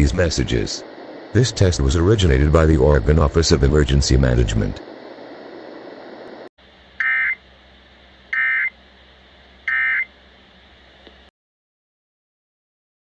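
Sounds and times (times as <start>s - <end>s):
digital data tone bursts: 7.0s - 7.4s, 8.3s - 8.8s, 9.6s - 10.1s.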